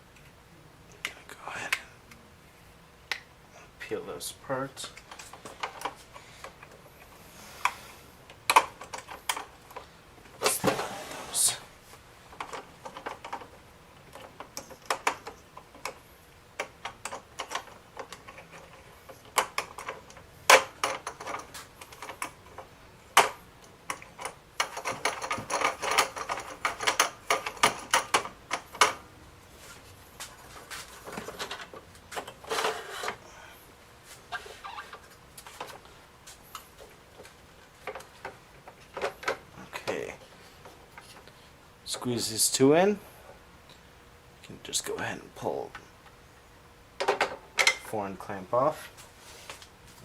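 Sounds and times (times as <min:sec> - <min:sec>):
plastic parts clicking and clacking: 0:12.3 - 0:13.5, 0:16.6 - 0:29.0, 0:37.2 - 0:40.0.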